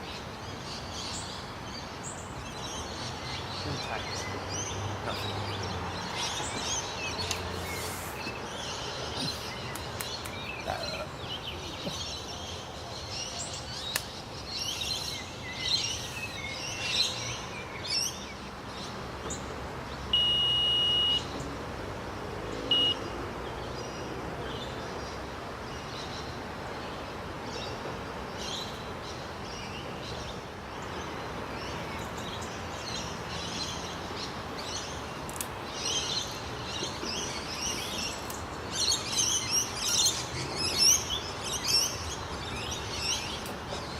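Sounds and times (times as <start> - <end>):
birds chirping and singing: 0.0 - 19.4, 28.4 - 43.9
electronic bite alarm beeps: 20.2 - 21.3, 22.7 - 23.0.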